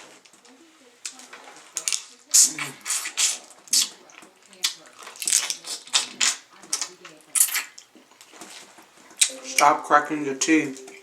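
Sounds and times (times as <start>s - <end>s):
chewing and smacking: 1.8s - 8.7s.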